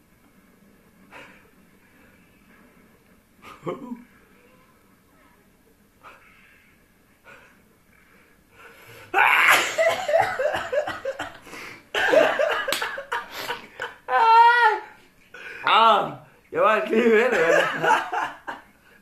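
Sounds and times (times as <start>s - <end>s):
person sneezing: 9.2s - 10.2s.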